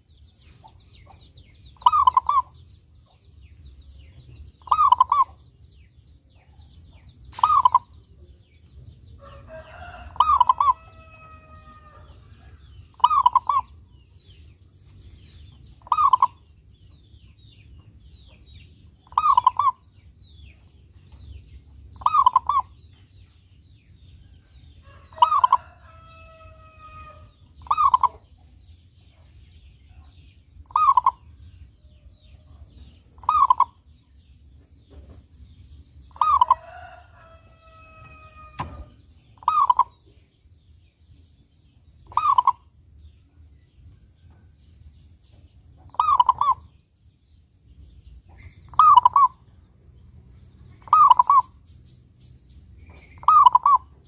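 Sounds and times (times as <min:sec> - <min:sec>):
faint small birds chirping: 0:00.0 - 0:54.0
dove cooing: 0:04.6 - 0:05.3, 0:07.4 - 0:07.9, 0:09.8 - 0:10.8, 0:15.8 - 0:16.4, 0:22.0 - 0:22.7, 0:27.1 - 0:28.2, 0:33.2 - 0:33.8, 0:39.4 - 0:39.9, 0:42.1 - 0:42.6, 0:45.9 - 0:46.7, 0:48.7 - 0:49.4, 0:50.8 - 0:51.4, 0:53.2 - 0:53.9
long drawn-out bird call: 0:04.6 - 0:05.4, 0:07.4 - 0:07.9, 0:09.2 - 0:12.2, 0:12.9 - 0:13.8, 0:15.8 - 0:16.4, 0:19.1 - 0:19.8, 0:22.0 - 0:22.8, 0:24.8 - 0:28.3, 0:30.6 - 0:31.4, 0:33.2 - 0:33.8, 0:36.1 - 0:40.2, 0:42.1 - 0:42.7, 0:45.9 - 0:46.8, 0:48.4 - 0:49.5, 0:50.8 - 0:51.7, 0:53.1 - 0:54.0.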